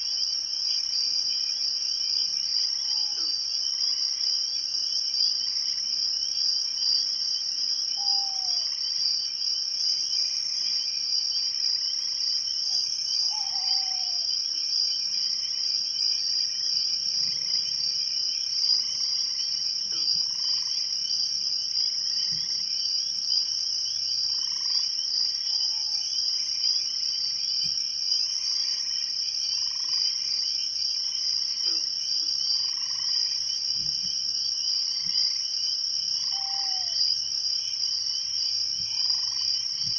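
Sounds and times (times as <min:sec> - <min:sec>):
crickets trilling: 0:00.0 - 0:39.9
low insect trill: 0:00.1 - 0:39.9
frog calling: 0:02.8 - 0:04.0, 0:08.0 - 0:08.8, 0:12.7 - 0:14.3, 0:25.4 - 0:26.4, 0:31.6 - 0:31.9, 0:36.2 - 0:37.5.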